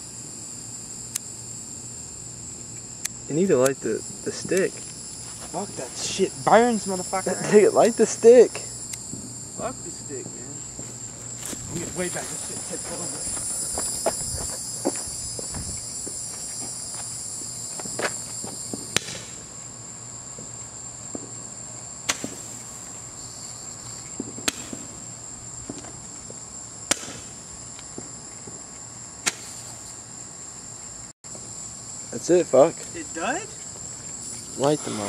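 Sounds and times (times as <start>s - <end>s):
crickets chirping: 0.0s - 35.0s
sharp pops: 17.8s - 19.4s, 22.0s - 22.8s, 24.2s - 25.0s, 26.9s - 27.4s, 29.2s - 29.9s.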